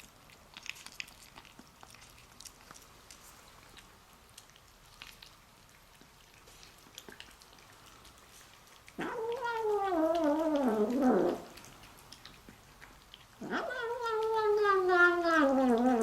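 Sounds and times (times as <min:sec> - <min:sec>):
kitten yowling: 0:09.0 - 0:11.5, 0:13.4 - 0:16.0.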